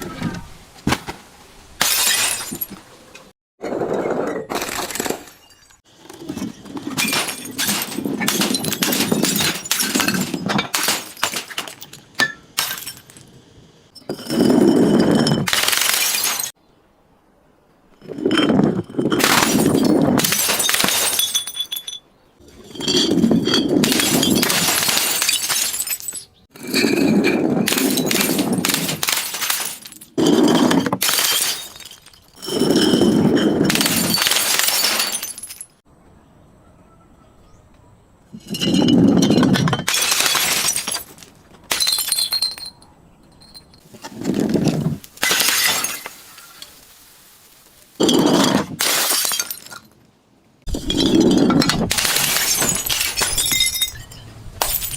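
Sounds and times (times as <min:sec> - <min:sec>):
glass bottles shattering: 0:01.8 - 0:02.8, 0:04.3 - 0:13.2, 0:14.0 - 0:16.6, 0:18.0 - 0:35.8, 0:38.4 - 0:46.9, 0:48.0 - 0:50.0, 0:50.7 - 0:54.9
glass pieces clinking: 0:18.0 - 0:35.8, 0:38.4 - 0:46.8, 0:48.0 - 0:49.9, 0:50.7 - 0:54.9.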